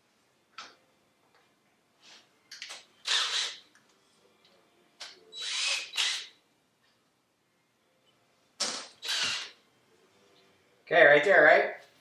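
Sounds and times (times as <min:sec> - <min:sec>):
power drill bursts: 0:03.0 - 0:03.6, 0:05.4 - 0:06.3, 0:08.9 - 0:09.6.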